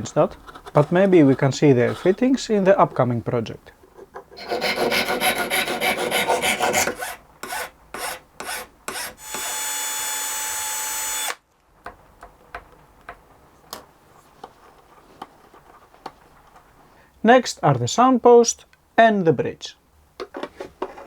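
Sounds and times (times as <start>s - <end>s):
rasp shaping wood: 4.4s - 9.3s
small power tool whirring: 8.4s - 11.4s.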